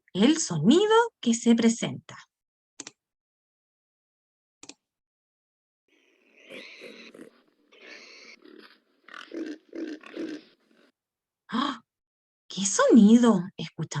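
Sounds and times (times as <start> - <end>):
pig grunting: 5.9 - 10.9.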